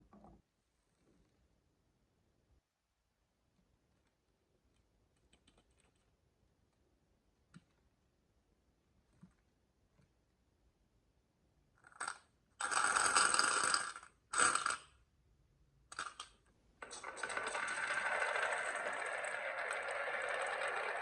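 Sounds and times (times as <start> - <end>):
marbles rolling and rattling: 11.8 - 14.9, 15.9 - 21.0.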